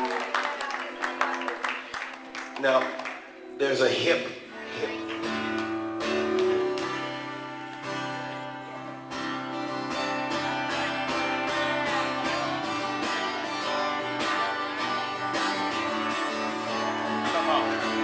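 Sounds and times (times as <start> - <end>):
guitar strummed: 4.4 - 18.0.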